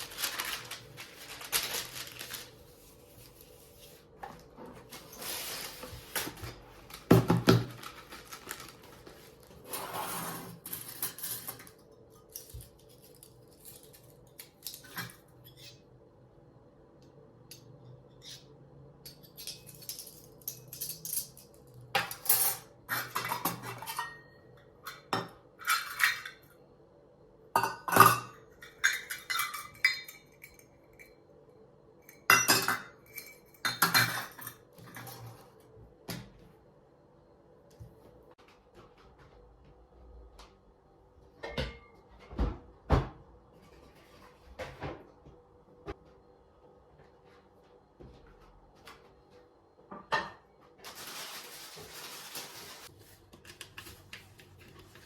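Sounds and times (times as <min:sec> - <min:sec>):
dishes and utensils clinking: 0:18.2 - 0:26.4, 0:27.6 - 0:31.2, 0:32.1 - 0:35.4.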